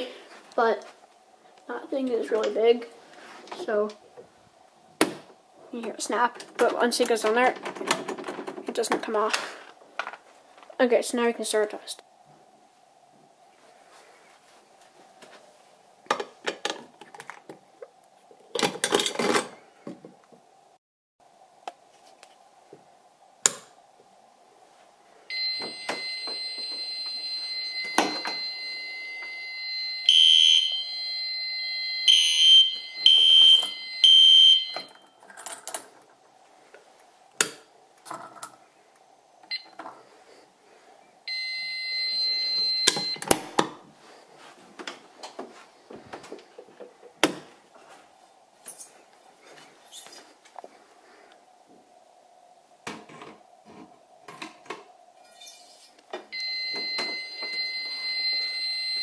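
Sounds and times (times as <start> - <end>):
high electronic alarm tone: 25.3 - 35.0, 41.3 - 43.3, 56.3 - 59.0
pulsed alarm beeps: 25.3 - 35.0, 41.3 - 43.3, 56.3 - 59.0.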